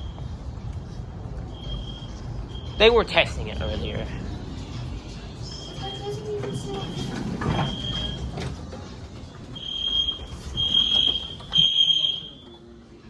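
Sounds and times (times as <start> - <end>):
fire alarm beeping: 1.5 - 3.2, 5.4 - 8.6, 9.5 - 12.6.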